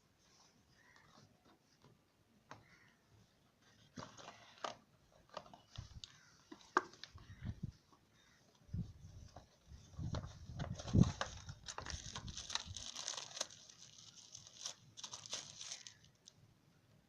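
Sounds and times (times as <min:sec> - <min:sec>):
paper rustling: 0:09.2 - 0:16.3
plastic crinkling: 0:10.0 - 0:16.4.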